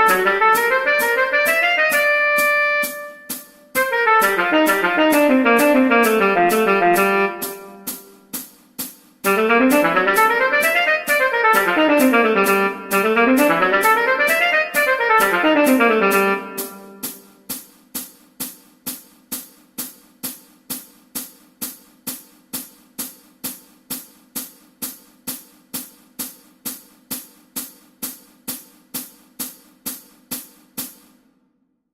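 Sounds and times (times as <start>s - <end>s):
instrumental music gliding lines: 0.0s - 8.5s, 9.2s - 17.6s
steady ticking beat: 0.0s - 31.2s.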